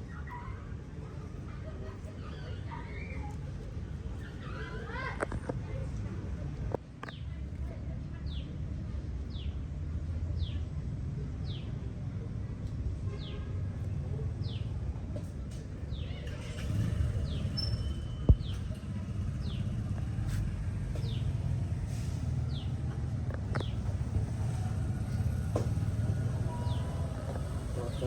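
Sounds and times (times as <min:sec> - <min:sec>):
bird chirping: 0:15.9 - 0:20.0.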